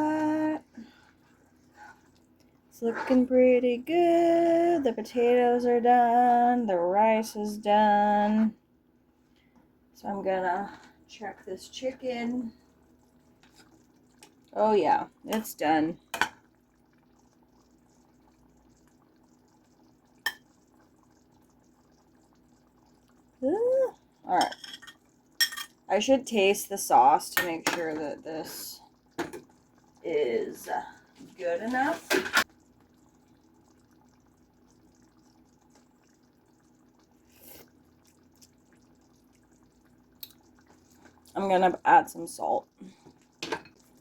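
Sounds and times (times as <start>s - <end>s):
faint steady hum: 0.0s - 44.0s
cookware clink: 24.4s - 25.8s.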